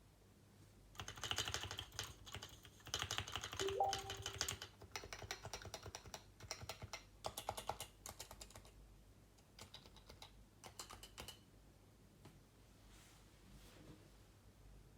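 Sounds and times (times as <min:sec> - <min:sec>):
keyboard typing: 0:01.0 - 0:08.7, 0:09.6 - 0:11.4.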